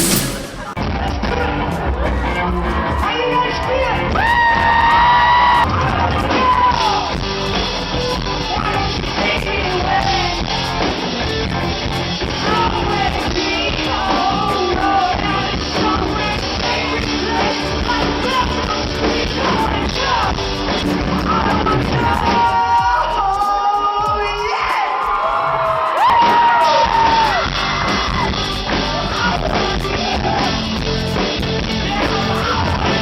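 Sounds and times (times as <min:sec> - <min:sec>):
rock band playing: 0:00.0 - 0:01.1.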